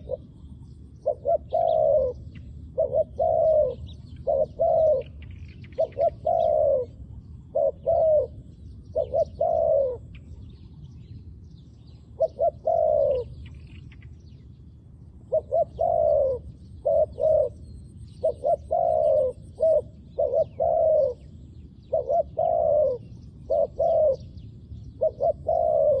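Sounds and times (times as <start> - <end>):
dove cooing: 0.0 - 11.0, 12.1 - 14.2, 15.2 - 26.0
small birds chirping: 0.0 - 26.0.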